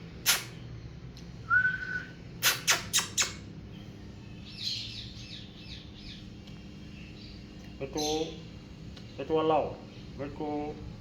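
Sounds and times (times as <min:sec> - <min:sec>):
parrot whistle: 0:01.4 - 0:03.4
parrot soft chattering: 0:02.4 - 0:03.4.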